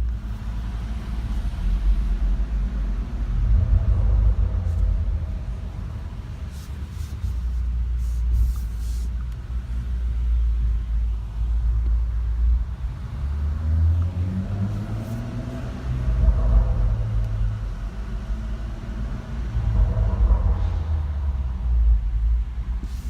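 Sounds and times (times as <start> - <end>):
car exhaust rumbling: 0.0 - 23.0
exhaust crackles and pops: 14.0 - 23.0.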